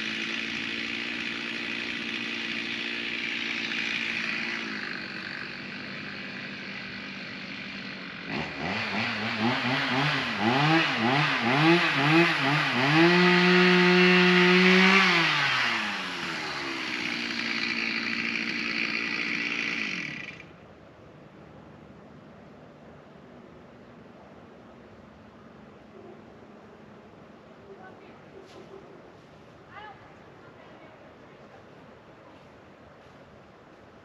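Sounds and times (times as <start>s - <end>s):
chainsaw revving: 0.0s - 20.5s.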